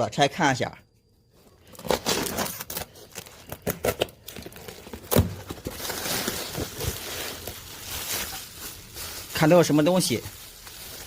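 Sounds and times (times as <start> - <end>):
plastic and cardboard crinkling: 1.5 - 11.0
packaging rustling: 1.6 - 11.0.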